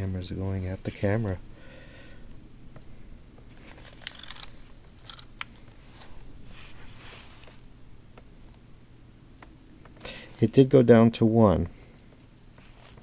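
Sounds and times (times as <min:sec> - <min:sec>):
faint low hum: 0:00.0 - 0:13.0
short rustles: 0:05.6 - 0:07.6.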